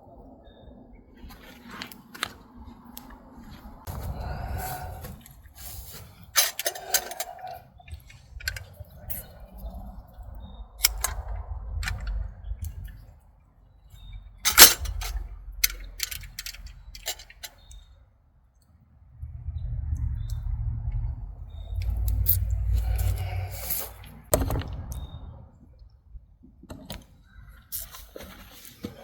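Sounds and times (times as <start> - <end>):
hands handling things clicking: 6.2 - 9.4, 10.8 - 12.9, 14.4 - 17.8
low rumble: 7.9 - 17.9, 18.8 - 26.4.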